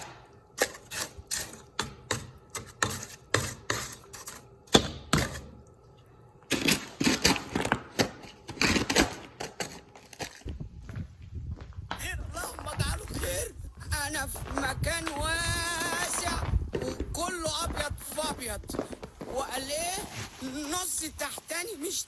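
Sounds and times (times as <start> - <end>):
footsteps crunching in snow: 9.6 - 22.0.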